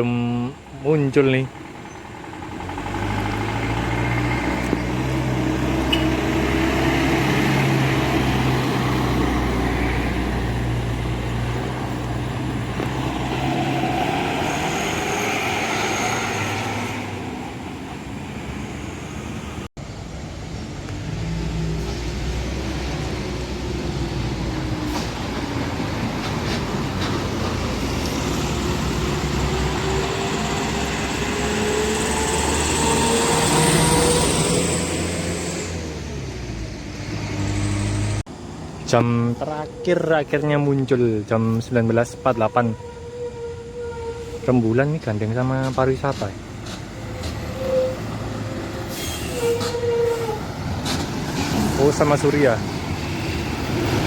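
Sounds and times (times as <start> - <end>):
heavy diesel traffic passing: 0.0 - 54.0
engine accelerating: 1.6 - 20.1, 20.8 - 38.5.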